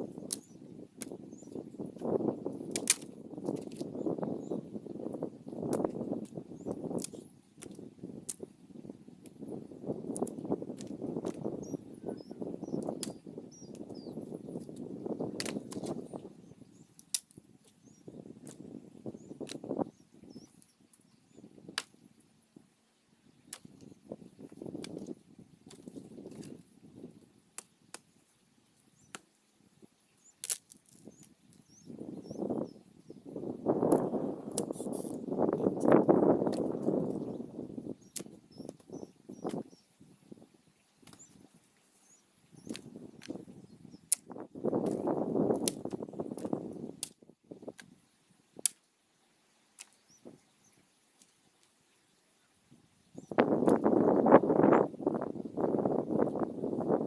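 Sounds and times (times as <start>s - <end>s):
dry brush and twigs rustling: 0.0s - 4.6s, 5.6s - 19.8s, 23.4s - 32.6s, 33.4s - 48.9s, 53.2s - 57.0s
faint bird chirps: 0.1s - 2.2s, 3.8s - 5.7s, 8.6s - 44.4s, 49.5s - 57.0s
twigs snapping: 0.3s - 1.2s, 2.0s - 4.0s, 5.6s - 8.5s, 10.0s - 11.5s, 12.7s - 13.9s, 14.6s - 16.0s, 16.9s - 17.8s, 18.4s - 18.6s, 19.4s - 19.7s, 21.7s - 22.0s, 23.5s - 23.9s, 24.8s - 26.6s, 27.6s - 28.1s, 29.0s - 29.4s, 30.4s - 31.6s, 33.8s - 37.2s, 38.1s - 39.7s, 41.0s - 41.5s, 42.6s - 43.4s, 44.0s - 47.9s, 48.6s - 48.8s, 49.8s - 50.0s, 53.4s - 54.1s.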